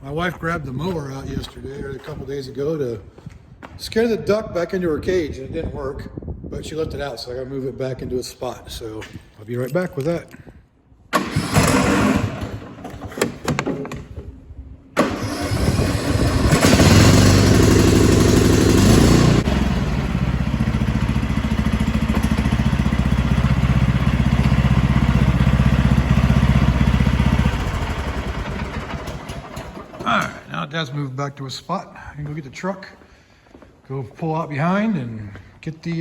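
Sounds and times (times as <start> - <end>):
lawn mower engine running: 11.1 - 13.7, 15.0 - 30.5.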